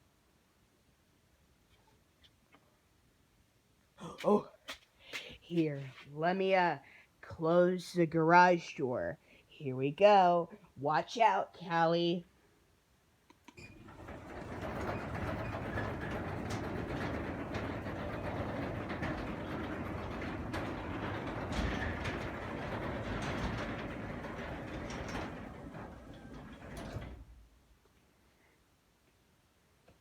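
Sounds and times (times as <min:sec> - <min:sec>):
garage door opener running: 0:13.6 - 0:27.4
garage door bump: 0:13.6 - 0:27.5.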